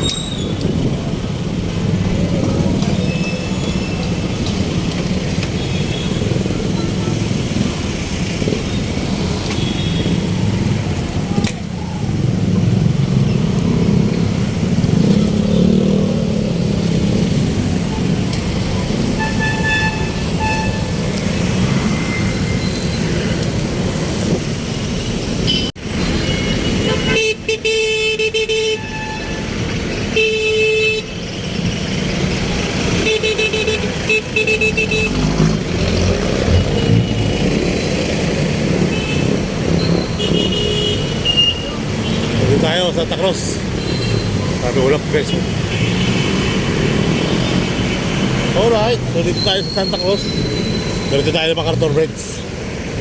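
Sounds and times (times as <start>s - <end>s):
street traffic: 0.0s - 53.0s
vehicle horn honking: 25.5s - 29.4s.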